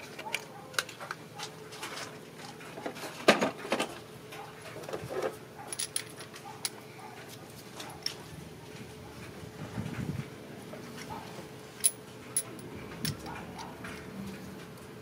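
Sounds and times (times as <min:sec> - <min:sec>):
metal tools clinking and knocking: 0:04.8 - 0:06.8, 0:11.8 - 0:13.7.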